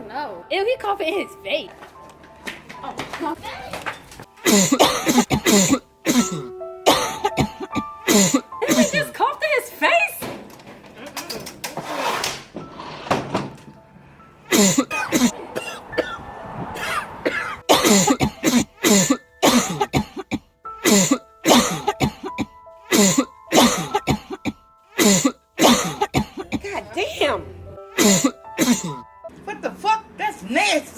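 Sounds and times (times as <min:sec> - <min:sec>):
background music with held tones: 0:00.0 - 0:10.9, 0:17.3 - 0:30.9
man coughing: 0:04.4 - 0:09.0, 0:14.5 - 0:16.2, 0:16.9 - 0:26.7, 0:28.0 - 0:29.0.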